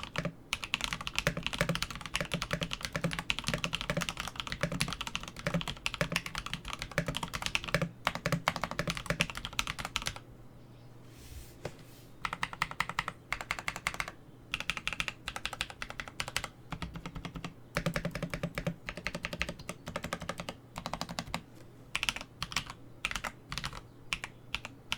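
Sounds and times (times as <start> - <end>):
mechanical keyboard typing: 0.0 - 10.2, 12.2 - 21.4, 22.0 - 24.7.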